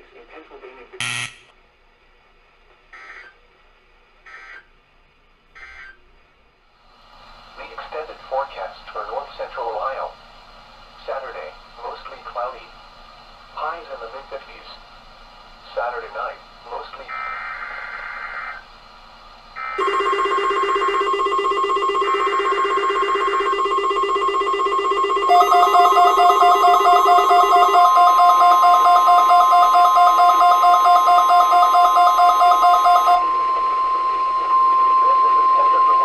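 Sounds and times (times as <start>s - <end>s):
steady warning alarm tone: 1.0s - 1.4s, 5.6s - 6.0s, 19.6s - 36.0s
warbling alarm beeps: 19.6s - 36.0s
screechy digital data bursts: 25.2s - 33.3s.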